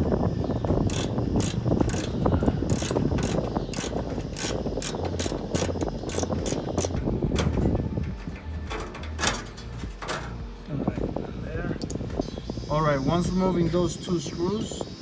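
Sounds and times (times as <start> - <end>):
hand ratchet clicking: 0.8 - 10.2.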